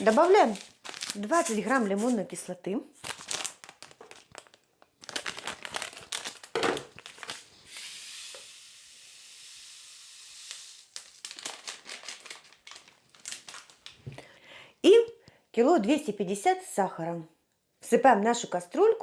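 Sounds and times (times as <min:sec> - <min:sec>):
plastic packet crinkling: 0:00.0 - 0:02.2, 0:03.0 - 0:07.7, 0:10.5 - 0:14.2
crystals poured into saucepan: 0:07.7 - 0:11.2.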